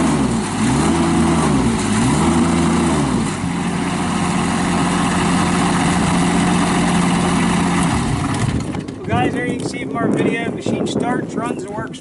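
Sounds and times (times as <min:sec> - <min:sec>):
diesel engine running: 0:00.0 - 0:09.6.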